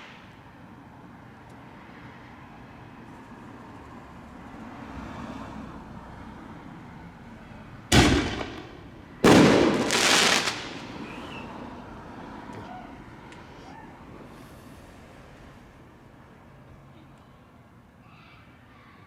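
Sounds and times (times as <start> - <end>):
fireworks bangs: 7.9 - 11.6
fireworks crackle: 7.9 - 11.6.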